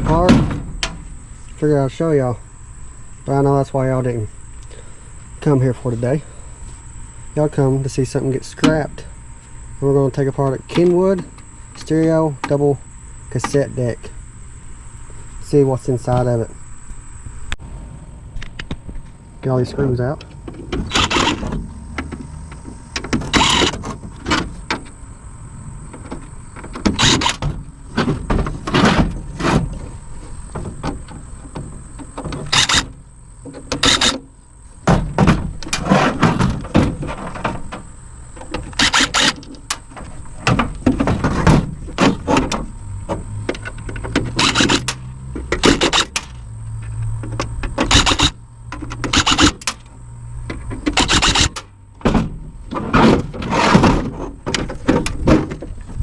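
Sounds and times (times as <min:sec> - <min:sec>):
cordless power screwdriver running: 0:23.4 - 0:23.7, 0:32.6 - 0:32.8, 0:38.8 - 0:39.3, 0:49.1 - 0:49.5, 0:51.0 - 0:51.5.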